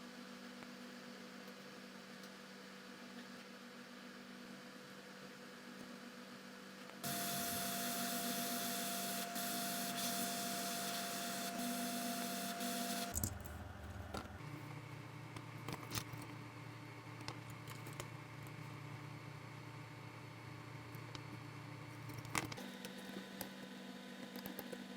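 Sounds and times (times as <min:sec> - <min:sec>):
electric tool hissing with steady tone: 0:07.0 - 0:13.2.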